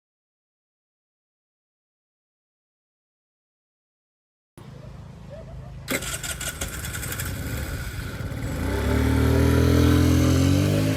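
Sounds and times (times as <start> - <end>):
motorcycle engine running: 5.9 - 10.9.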